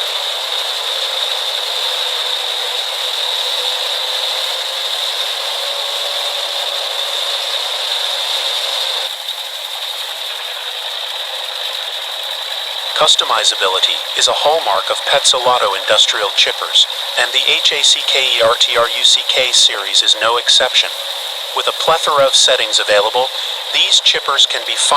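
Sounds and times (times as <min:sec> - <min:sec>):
wood chipper running: 0:00.0 - 0:15.8, 0:16.6 - 0:17.3, 0:20.8 - 0:22.0, 0:22.7 - 0:23.9.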